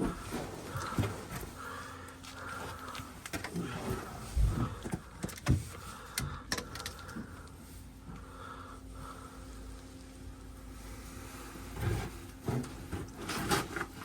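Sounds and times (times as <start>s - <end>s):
steady low hum: 0.0s - 14.0s
knocks and clunks of handling: 2.9s - 7.4s.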